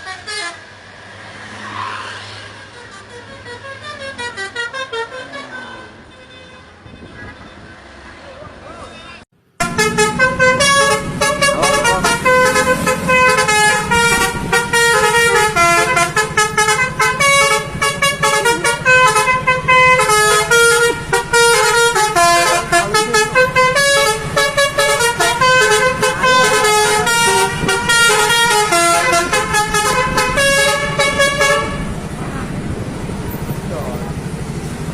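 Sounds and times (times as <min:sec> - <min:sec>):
musical bus horn melody: 0:00.0 - 0:00.7, 0:02.7 - 0:07.2, 0:09.6 - 0:32.0.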